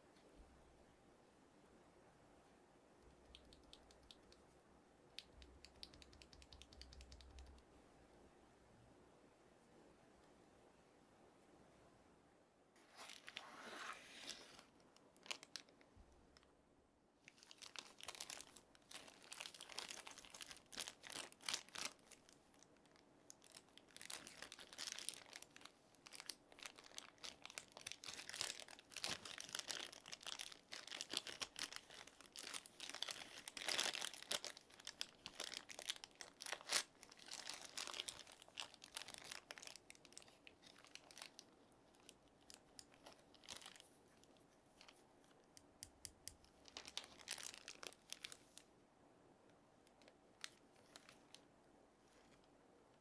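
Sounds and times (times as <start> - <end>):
packaging crinkling and rustling: 12.8 - 16.5, 17.2 - 45.1, 46.2 - 48.7, 49.9 - 52.5.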